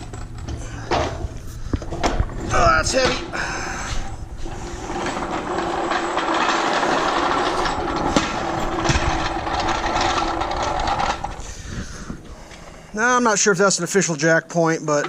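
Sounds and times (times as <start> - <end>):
floor jack rolling: 0.0 - 13.0
clicks and knocks: 4.8 - 11.4.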